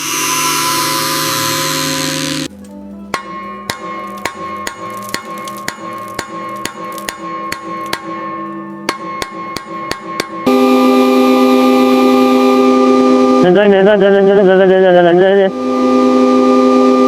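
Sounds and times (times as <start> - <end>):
held tones: 0.0 - 6.6.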